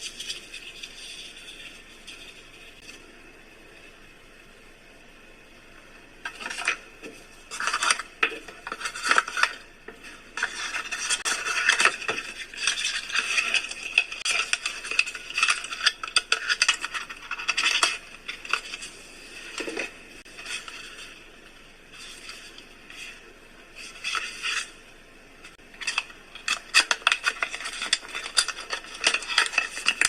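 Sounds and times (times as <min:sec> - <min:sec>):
plastic packaging rustling: 0:06.2 - 0:24.8, 0:25.5 - 0:30.0.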